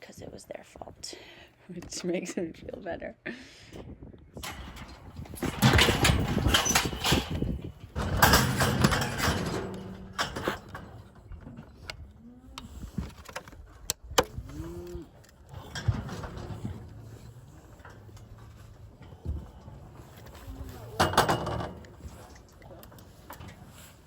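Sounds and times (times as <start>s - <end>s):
steel chute clanging and rattling: 4.4s - 12.0s, 15.3s - 24.0s
cow mooing: 14.4s - 15.2s.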